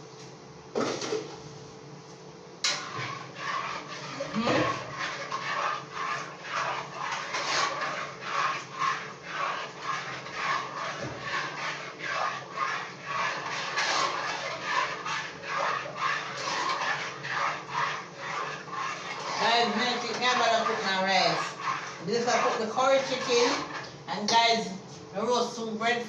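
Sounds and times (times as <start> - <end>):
utensil scraping in container: 2.6 - 24.5.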